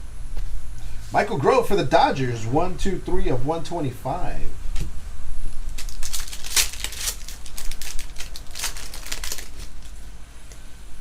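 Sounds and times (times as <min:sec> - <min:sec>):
steady low hum: 0:00.0 - 0:11.0
trading cards being handled: 0:05.7 - 0:10.0.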